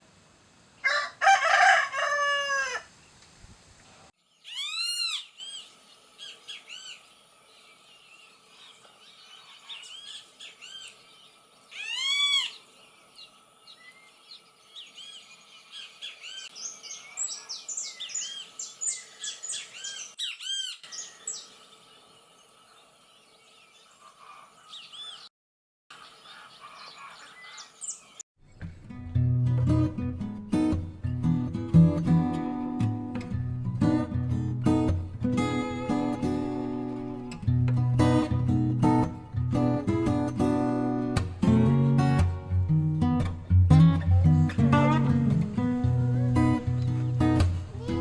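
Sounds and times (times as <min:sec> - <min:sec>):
birds calling: 0:04.3 - 0:25.3, 0:25.9 - 0:28.6, 0:33.8 - 0:39.2, 0:43.1 - 0:48.0.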